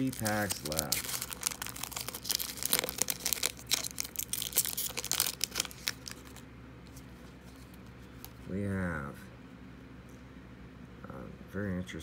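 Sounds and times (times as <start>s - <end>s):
foil wrapper tearing and crinkling: 0.0s - 6.4s.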